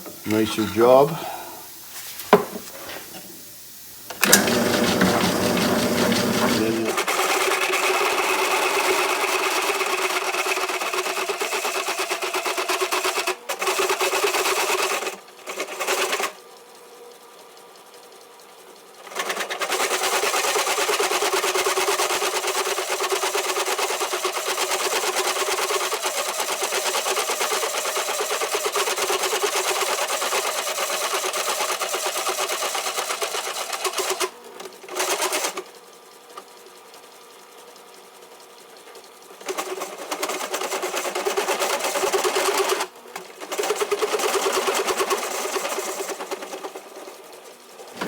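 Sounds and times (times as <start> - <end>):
steady machine hum: 3.2 - 7.0
power tool cutting steel: 4.2 - 7.6.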